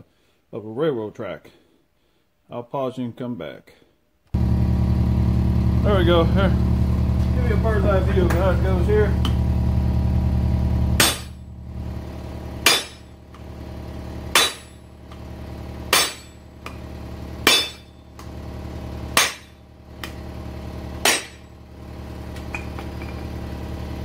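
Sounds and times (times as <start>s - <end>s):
hammer striking metal: 9.2s - 9.4s, 11.0s - 11.5s, 12.6s - 13.4s, 14.3s - 15.3s, 15.9s - 18.3s, 19.2s - 20.2s, 21.0s - 21.5s, 22.4s - 23.2s.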